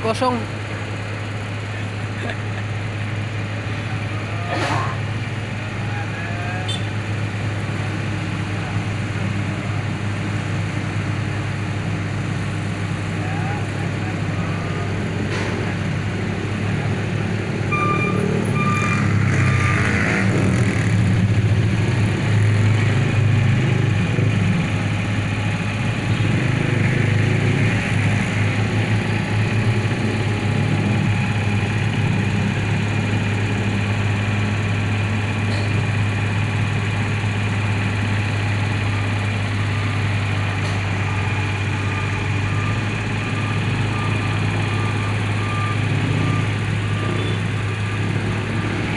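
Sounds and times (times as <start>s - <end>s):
excavator diesel engine running: 0.0s - 48.9s
warning alarm beeping: 17.7s - 19.9s, 41.7s - 48.8s.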